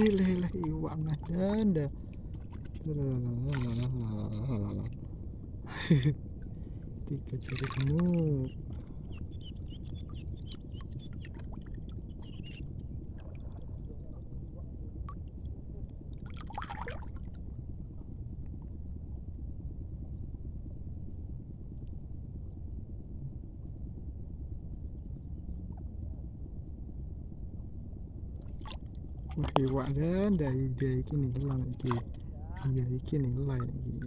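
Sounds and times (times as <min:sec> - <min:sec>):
shallow water sloshing and gurgling: 0:00.0 - 0:20.8, 0:28.0 - 0:34.0.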